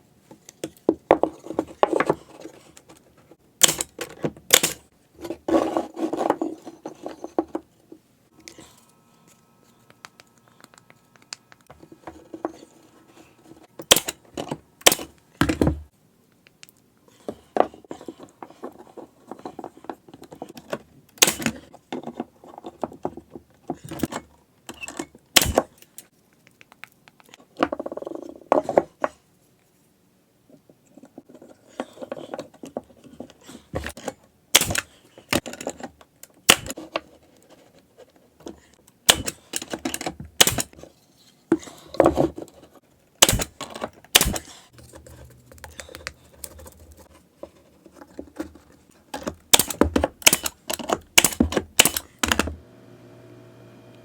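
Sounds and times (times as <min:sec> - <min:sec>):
rustling and handling noise: 0:00.0 - 0:52.5
wooden pieces clicking and knocking: 0:25.4 - 0:29.1, 0:41.5 - 0:52.5.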